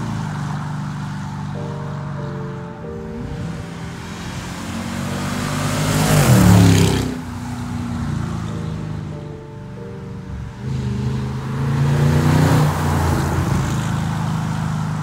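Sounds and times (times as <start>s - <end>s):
car driving past: 0.0s - 15.0s
music with sustained chords: 0.0s - 15.0s.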